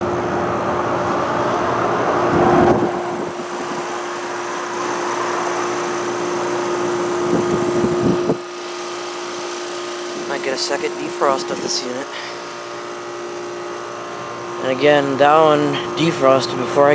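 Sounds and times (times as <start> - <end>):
fan whoosh: 0.0 - 16.8
compressor hum: 0.0 - 16.9.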